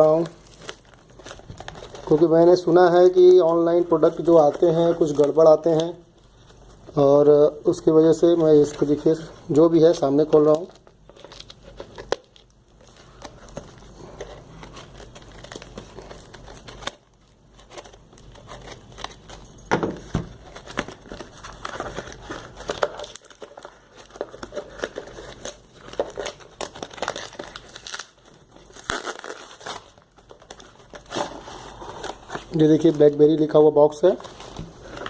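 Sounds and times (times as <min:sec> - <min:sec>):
packaging tearing and crinkling: 0:00.0 - 0:07.1, 0:09.8 - 0:35.0.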